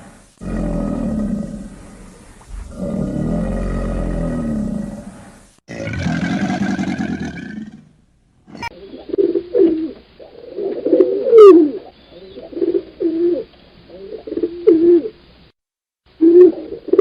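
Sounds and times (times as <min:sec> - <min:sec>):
pigeon cooing: 0:08.6 - 0:15.2, 0:16.2 - 0:17.0.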